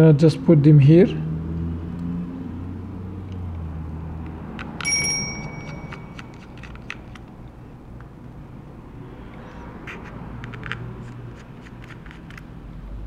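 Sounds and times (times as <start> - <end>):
small parts clicking and tapping: 4.2 - 8.1, 10.4 - 12.5
metal object clinking and ringing: 4.8 - 6.6.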